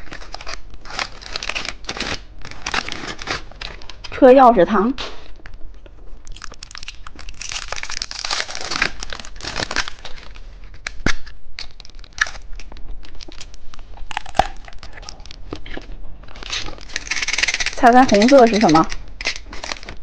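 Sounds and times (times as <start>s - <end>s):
plastic wrapper crinkling: 0.0s - 20.0s.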